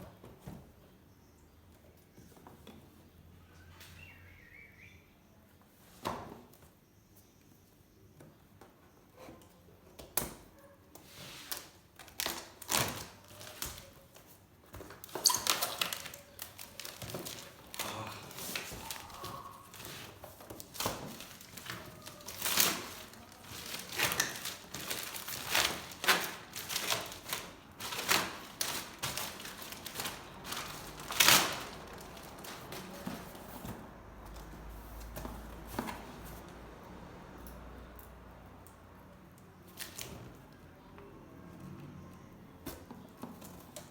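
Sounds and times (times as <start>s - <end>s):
packaging rustling and crinkling: 11.0s - 36.5s.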